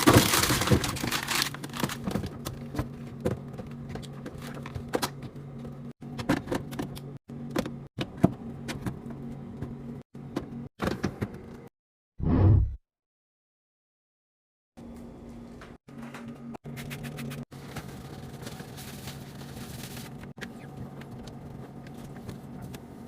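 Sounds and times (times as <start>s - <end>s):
plastic packaging rustling: 0.0s - 2.7s, 17.6s - 20.3s
fridge humming: 0.0s - 11.6s.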